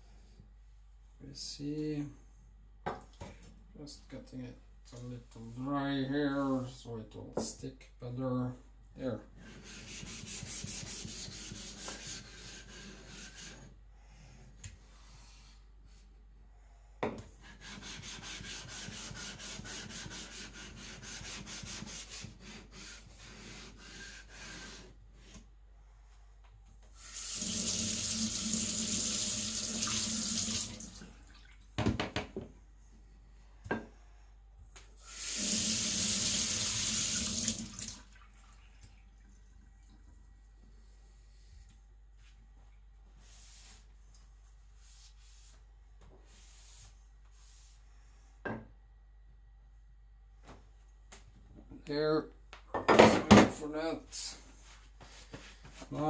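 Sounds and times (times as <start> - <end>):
tap water running into sink: 27.0 - 31.5, 35.1 - 38.6.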